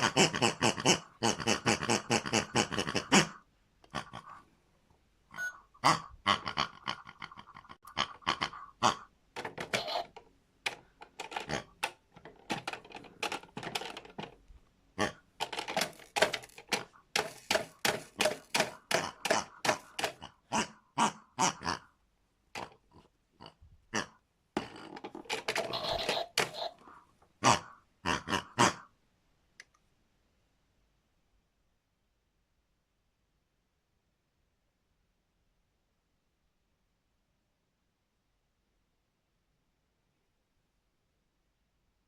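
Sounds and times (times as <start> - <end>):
pigs grunting and oinking: 0.0 - 4.4, 5.4 - 9.1, 9.7 - 10.2, 11.3 - 11.8, 15.0 - 15.2, 18.5 - 21.9, 22.6 - 26.8, 27.4 - 28.9.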